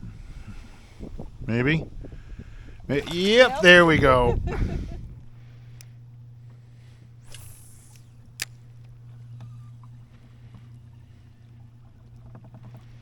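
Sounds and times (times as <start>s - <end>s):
boat motor humming: 0.0s - 13.0s
sharp click: 7.3s - 9.6s.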